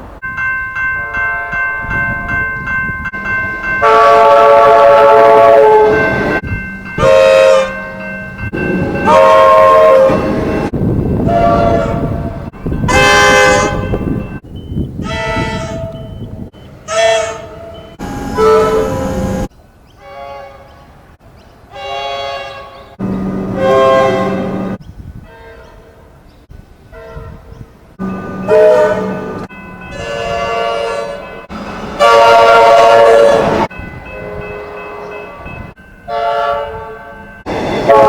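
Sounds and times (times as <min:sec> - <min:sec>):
rumble of moving train: 0:00.0 - 0:19.5, 0:20.3 - 0:38.0
electric train horn blasts: 0:03.8 - 0:06.4, 0:07.0 - 0:08.0, 0:09.0 - 0:10.4, 0:11.2 - 0:12.2, 0:12.8 - 0:14.2, 0:16.9 - 0:20.6, 0:21.8 - 0:25.8, 0:28.0 - 0:35.2, 0:36.1 - 0:37.2, 0:37.8 - 0:38.0.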